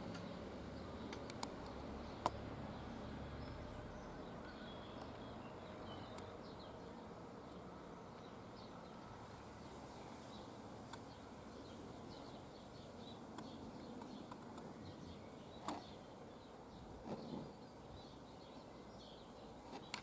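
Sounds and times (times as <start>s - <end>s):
faint outdoor hum: 0.0s - 20.0s
small birds chirping: 0.0s - 20.0s
sharp clicks: 1.1s - 2.4s.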